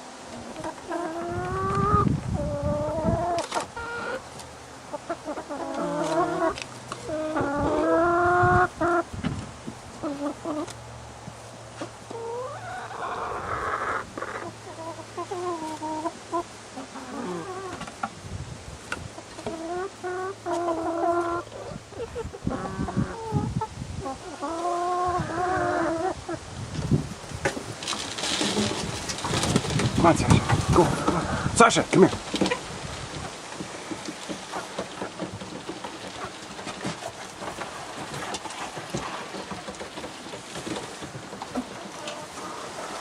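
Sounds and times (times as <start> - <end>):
chickens clucking: 0.0 - 43.0
chicken squawk: 5.0 - 9.1, 12.1 - 17.8, 19.5 - 26.4.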